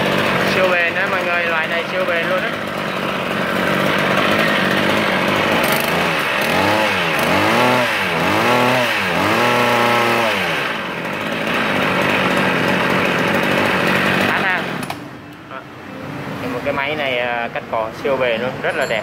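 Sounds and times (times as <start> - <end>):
brush cutter engine revving: 0.0 - 15.1.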